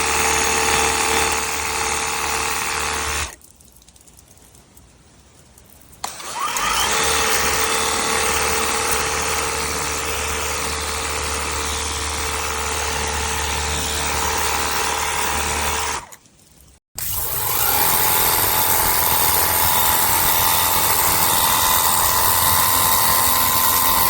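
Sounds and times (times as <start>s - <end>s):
pressure washer pump humming: 6.0s - 16.1s, 17.0s - 24.0s.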